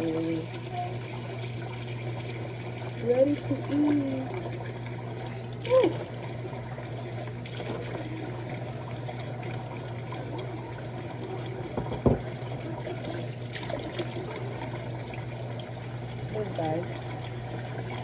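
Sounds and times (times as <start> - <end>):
trickling water: 0.0 - 18.0
knock: 11.8 - 12.2.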